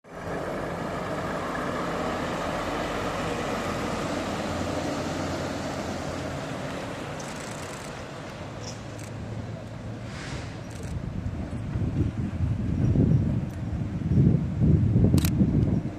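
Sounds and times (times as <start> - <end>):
diesel truck engine running: 0.0 - 10.0
heavy road noise: 0.0 - 15.9.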